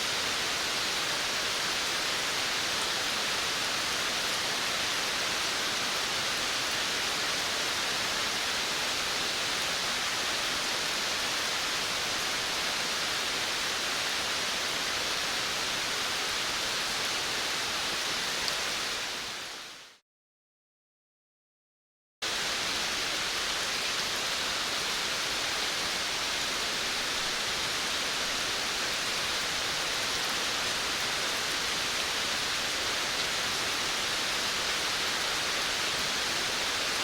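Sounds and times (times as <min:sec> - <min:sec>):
steady rain falling: 0:00.0 - 0:20.0, 0:22.2 - 0:37.0.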